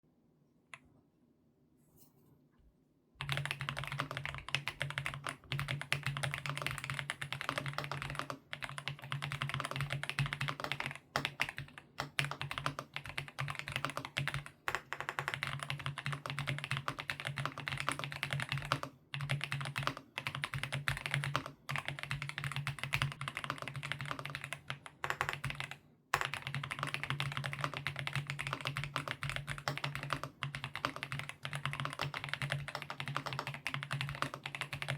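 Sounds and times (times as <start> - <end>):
mechanical keyboard typing: 3.2 - 34.9.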